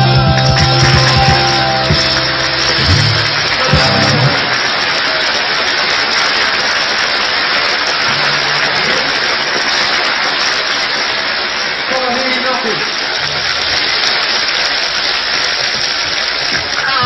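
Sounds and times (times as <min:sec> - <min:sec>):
rock band playing: 0:00.0 - 0:04.4
audience applauding and cheering: 0:00.0 - 0:17.0.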